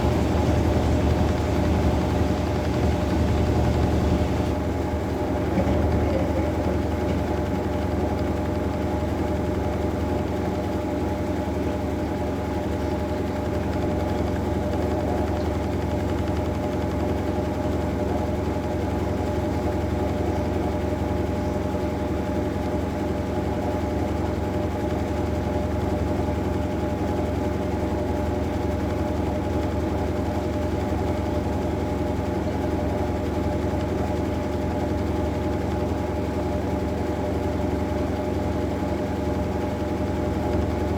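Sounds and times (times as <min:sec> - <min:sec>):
constant machine tones: 0:00.0 - 0:09.1
washing machine motor hum: 0:00.0 - 0:40.9.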